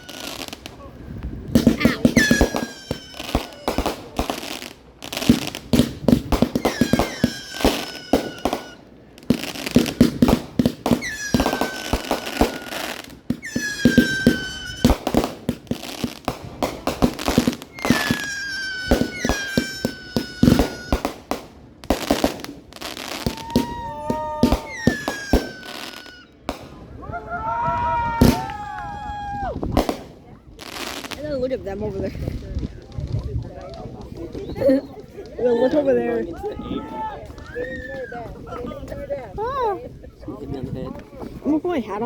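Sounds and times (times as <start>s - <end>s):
firework bangs and crackling: 0.0s - 42.0s
firework shell whistling down: 1.7s - 3.9s, 6.4s - 8.8s, 10.9s - 15.2s, 17.7s - 21.1s, 23.1s - 26.3s.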